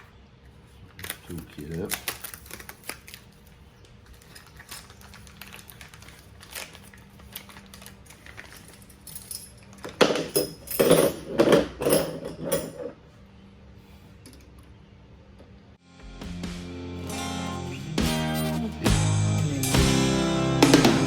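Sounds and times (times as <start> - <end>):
small metal tools clinking: 4.1 - 13.0.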